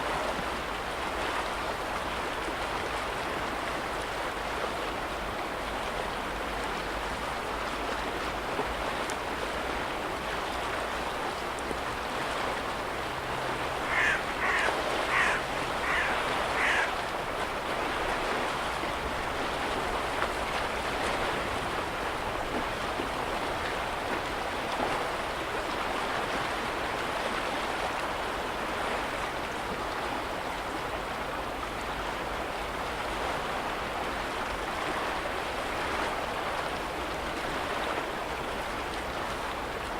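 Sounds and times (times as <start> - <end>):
small waves lapping: 0.0 - 39.9.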